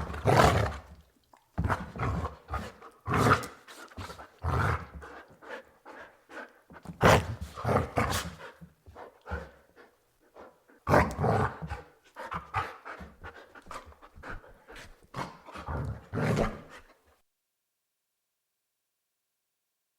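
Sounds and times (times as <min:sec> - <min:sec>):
dog barking and growling: 0:00.0 - 0:01.0, 0:06.9 - 0:08.5.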